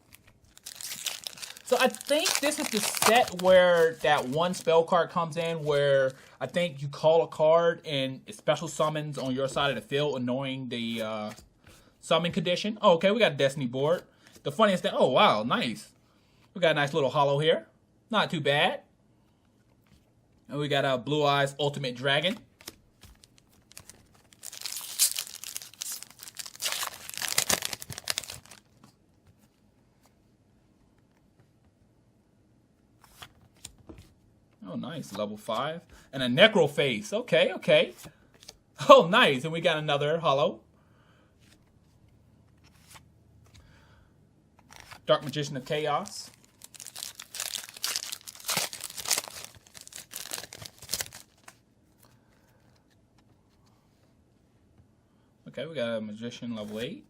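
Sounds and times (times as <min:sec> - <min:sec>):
foil wrapper tearing and crinkling: 0:00.0 - 0:04.6, 0:22.6 - 0:28.7, 0:46.3 - 0:51.5.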